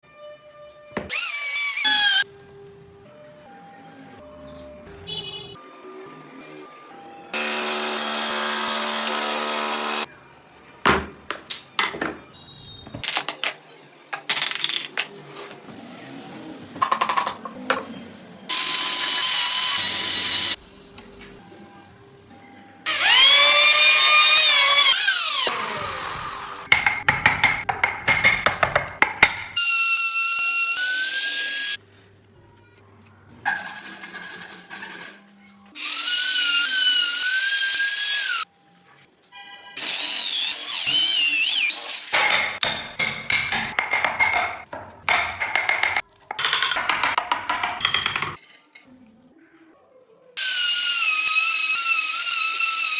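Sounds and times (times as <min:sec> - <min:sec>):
power tools whining: 0:07.3 - 0:10.1, 0:18.5 - 0:20.6, 0:22.9 - 0:26.7.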